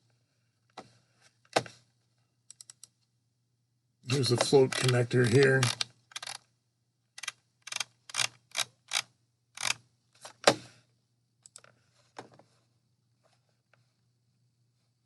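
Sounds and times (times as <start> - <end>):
computer mouse clicks: 2.5 - 3.0, 7.2 - 9.0, 9.6 - 9.8, 11.4 - 11.7.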